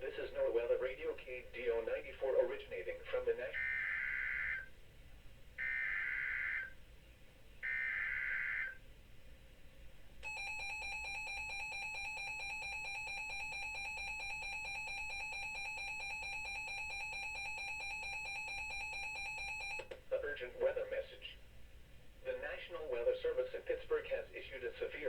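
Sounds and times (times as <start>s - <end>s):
two-tone attention signal: 10.2s - 19.8s.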